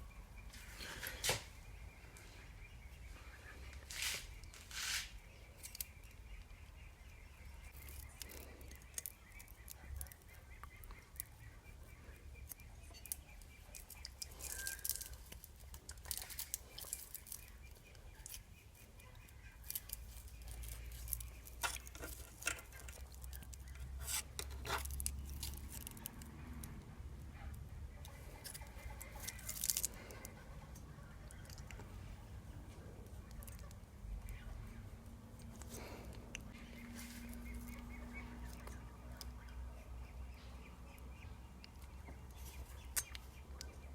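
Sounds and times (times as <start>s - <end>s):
tools and engine parts clinking: 12.8s - 17.5s, 19.6s - 26.0s.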